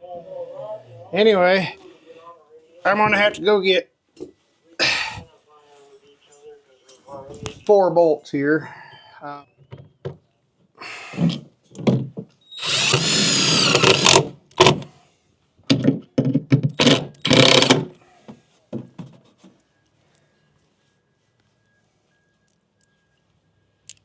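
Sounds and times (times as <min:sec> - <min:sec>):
power drill running: 0:12.6 - 0:14.3, 0:16.8 - 0:17.8.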